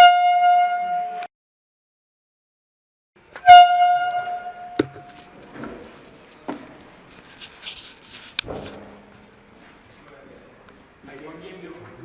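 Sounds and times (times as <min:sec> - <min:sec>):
horn blasts: 0:00.0 - 0:01.2, 0:03.4 - 0:05.4.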